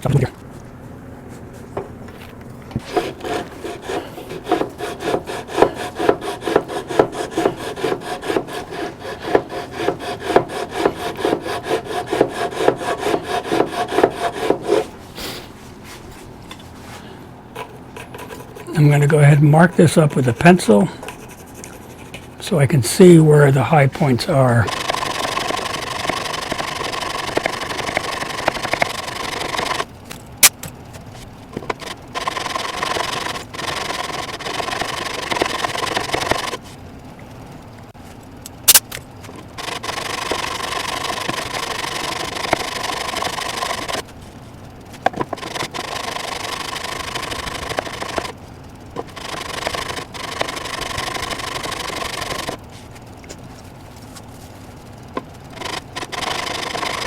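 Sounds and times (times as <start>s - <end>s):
wood sanding: 2.8s - 16.3s, 17.9s - 29.9s, 31.6s - 36.7s, 39.5s - 44.1s, 45.1s - 48.4s, 49.0s - 53.0s, 55.5s - 57.0s.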